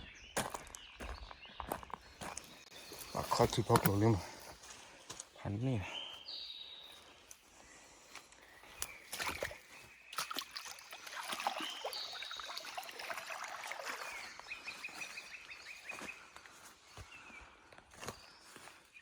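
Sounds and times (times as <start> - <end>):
high bird calls: 0.0 - 4.7, 10.9 - 19.0.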